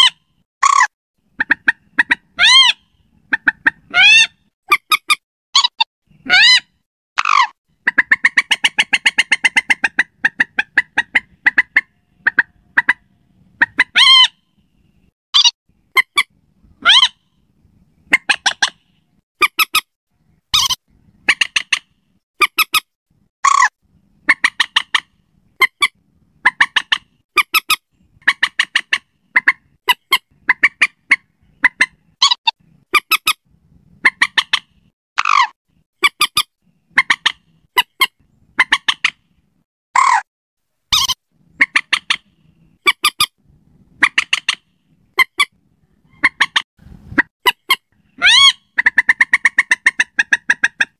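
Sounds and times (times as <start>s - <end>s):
moorhen clucking calls: 0.0s - 14.4s, 15.4s - 17.2s, 17.9s - 19.8s, 20.6s - 22.8s, 23.4s - 33.4s, 34.0s - 39.3s, 40.9s - 43.4s, 44.0s - 50.9s
moorhen falling call: 13.6s - 14.4s, 47.7s - 50.6s.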